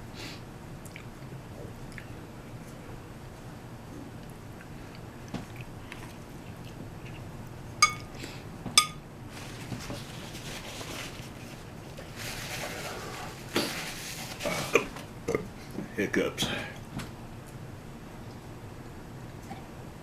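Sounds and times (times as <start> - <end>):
utensil clinking against dish: 7.8 - 8.1
scraping eating noise: 9.3 - 15.8.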